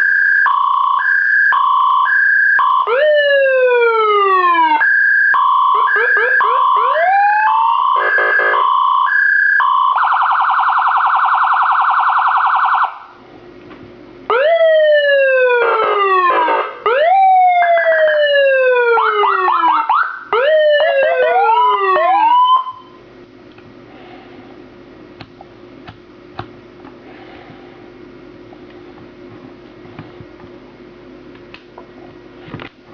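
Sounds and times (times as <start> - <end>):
electronic police siren: 0.0 - 13.2, 14.3 - 23.0
faint background hum: 0.0 - 32.9.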